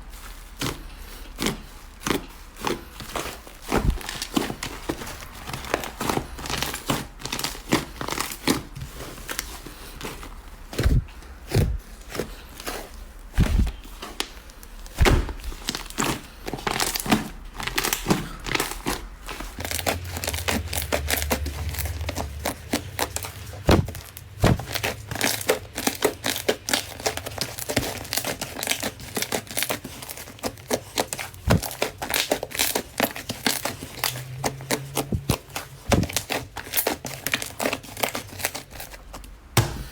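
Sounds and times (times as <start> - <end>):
slime crackling and popping: 13.3 - 39.9.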